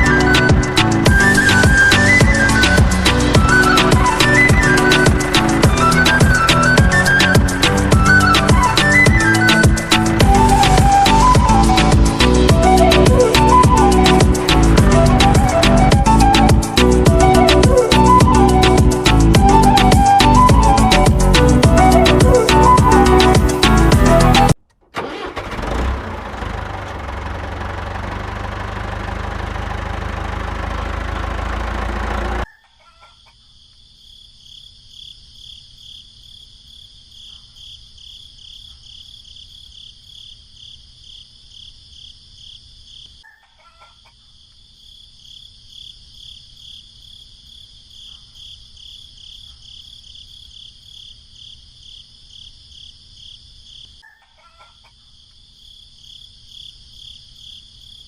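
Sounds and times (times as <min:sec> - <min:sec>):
small tractor engine running: 0:24.2 - 0:32.5
crickets chirping: 0:32.5 - 0:58.0.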